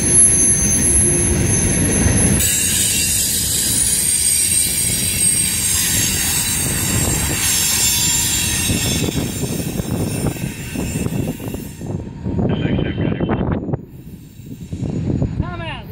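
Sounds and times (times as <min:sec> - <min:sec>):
freight train cars rumbling: 0:00.0 - 0:15.9
steel wheels squealing on rails: 0:00.0 - 0:15.9.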